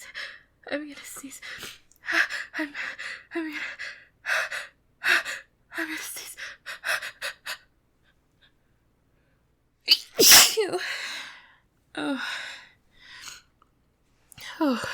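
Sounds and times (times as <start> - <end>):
woman sneezing: 9.9 - 10.7.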